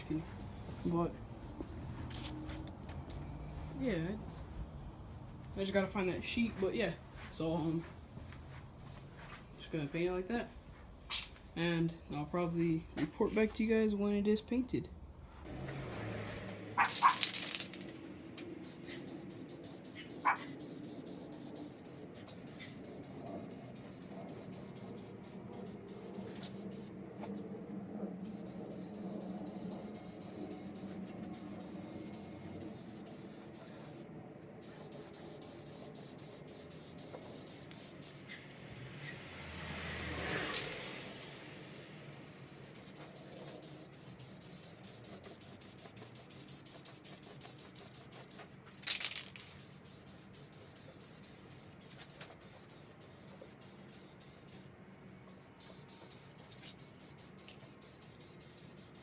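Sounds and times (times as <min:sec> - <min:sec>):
spray paint hissing: 0:16.8 - 0:26.9, 0:28.2 - 0:38.4, 0:40.5 - 0:54.7, 0:55.6 - 0:59.0.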